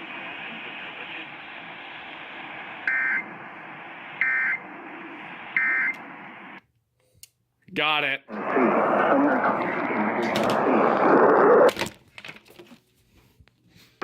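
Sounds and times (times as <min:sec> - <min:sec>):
radio hiss: 0:00.0 - 0:06.6, 0:08.3 - 0:11.7.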